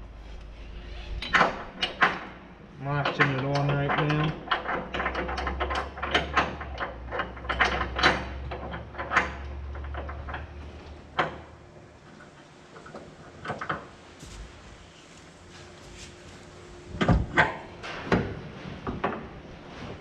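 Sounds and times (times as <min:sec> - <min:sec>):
low engine rumble: 0:00.0 - 0:20.0
metal clanks and clicks: 0:01.1 - 0:14.0.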